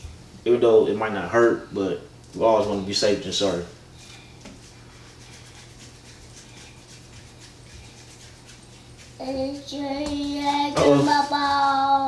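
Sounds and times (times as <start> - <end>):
child singing long notes: 9.2 - 12.0.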